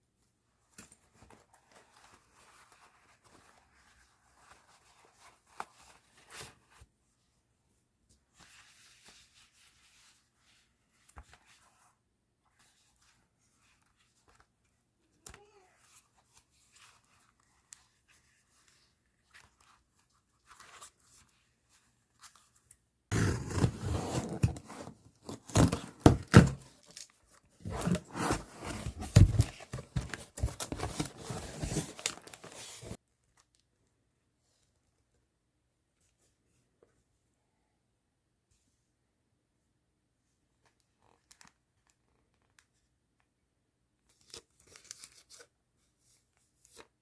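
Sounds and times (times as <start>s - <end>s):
packaging tearing and rustling: 23.1s - 33.0s.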